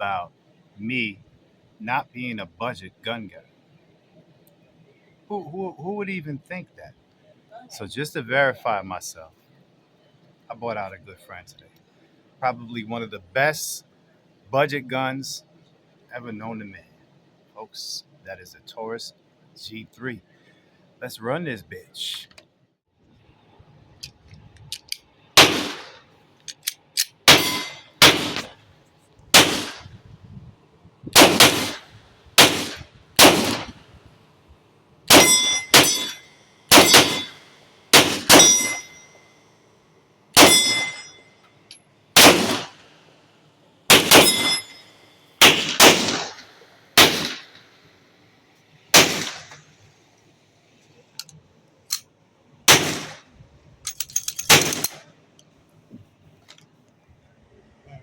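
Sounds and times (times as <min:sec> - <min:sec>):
pistol shots: 0:25.4 - 0:26.0, 0:27.2 - 0:28.6, 0:29.4 - 0:29.9, 0:31.2 - 0:33.8, 0:35.1 - 0:38.8, 0:40.4 - 0:41.0, 0:42.2 - 0:42.8, 0:43.9 - 0:44.7, 0:45.4 - 0:47.7, 0:49.0 - 0:49.7, 0:52.7 - 0:53.2, 0:54.5 - 0:55.0.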